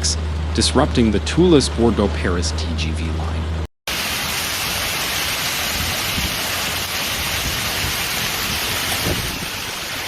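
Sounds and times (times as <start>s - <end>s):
rushing storm water: 3.9s - 10.0s.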